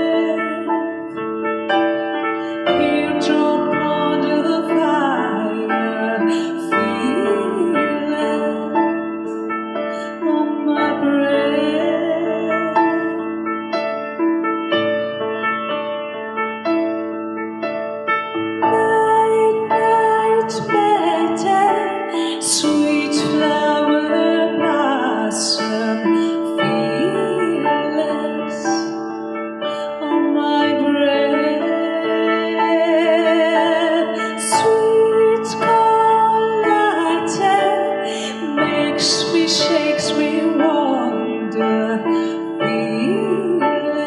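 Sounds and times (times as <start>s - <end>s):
woman singing: 0.0s - 1.1s, 2.4s - 13.3s, 18.6s - 29.1s, 29.7s - 44.0s
woman singing sustained notes: 2.6s - 9.0s, 18.7s - 29.0s.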